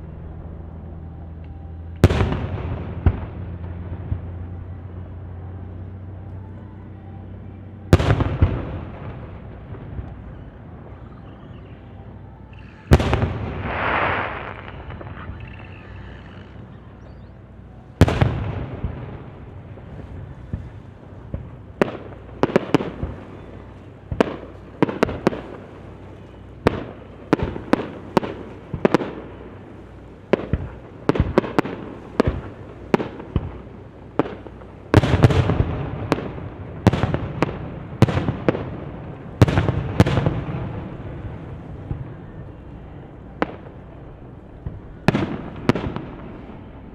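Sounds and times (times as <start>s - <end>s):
fireworks bursting: 1.8s - 5.4s, 7.6s - 17.3s, 17.9s - 46.9s
fireworks crackling hiss: 12.4s - 16.6s.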